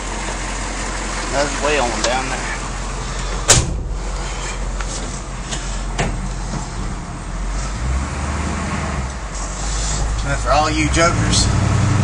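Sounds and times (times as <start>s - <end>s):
diesel truck engine running: 0.0s - 12.0s
sharp clunk: 3.4s - 4.0s.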